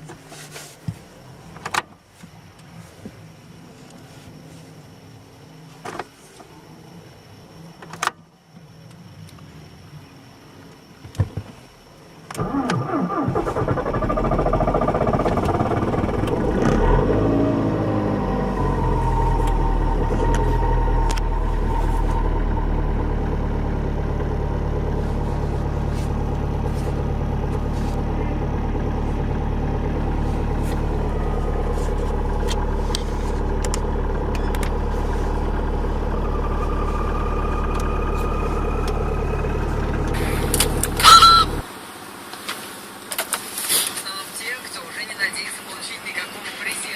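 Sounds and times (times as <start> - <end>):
diesel engine starting and idling: 11.6 - 46.9.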